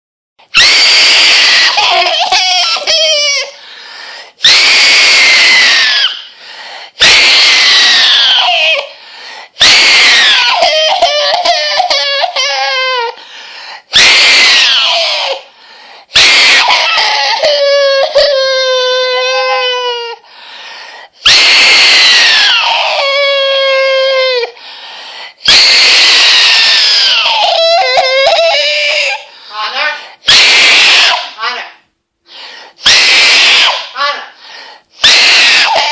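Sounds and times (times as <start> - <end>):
child screaming: 0.5 - 3.6, 4.4 - 6.3, 7.0 - 9.0, 9.6 - 13.2, 13.9 - 15.5, 16.1 - 20.2, 21.2 - 24.6, 25.4 - 31.7, 32.8 - 34.4, 35.0 - 35.9
child sobbing: 1.0 - 3.6, 7.0 - 9.0, 9.6 - 13.2, 16.4 - 20.2, 22.6 - 24.6, 26.4 - 30.4.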